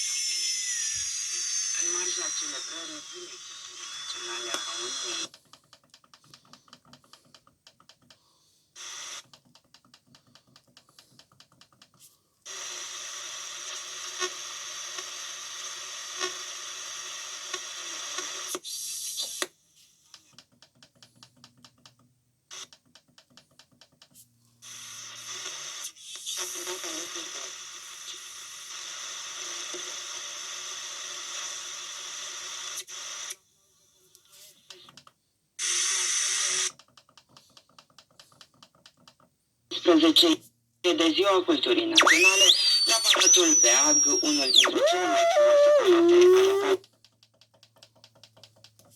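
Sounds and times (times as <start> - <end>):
radio static hiss: 0.0 - 5.3, 8.8 - 9.2, 12.5 - 19.4, 24.6 - 33.4, 35.6 - 36.7, 39.7 - 46.8.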